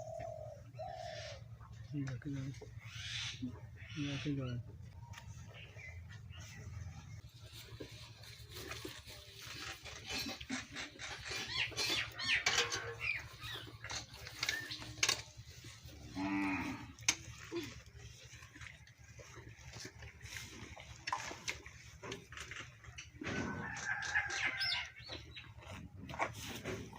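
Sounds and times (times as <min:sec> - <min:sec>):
cow lowing: 0:15.6 - 0:25.0.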